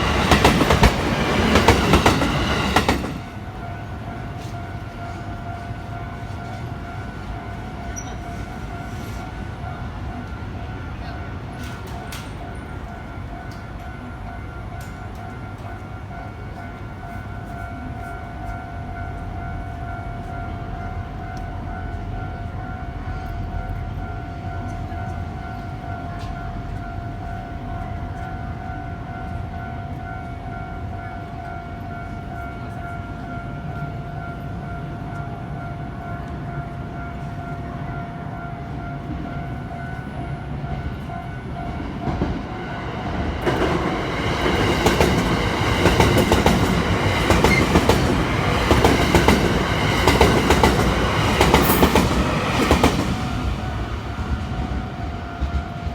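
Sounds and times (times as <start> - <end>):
train wheels clattering on rails: 0.0 - 9.4, 11.5 - 17.8, 40.7 - 55.9
train passing: 0.0 - 55.9.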